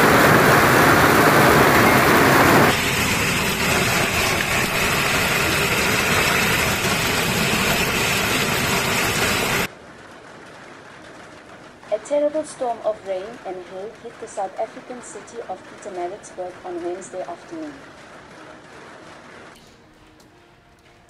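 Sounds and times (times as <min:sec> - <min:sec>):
hard rain and hail: 0:00.0 - 0:19.6
wind: 0:09.6 - 0:21.0.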